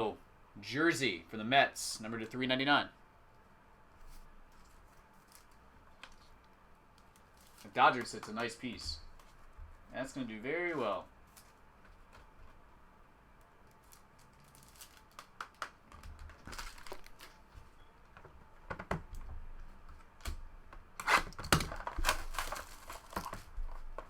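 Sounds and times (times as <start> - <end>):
cards clicking and rustling: 7.0 - 9.4.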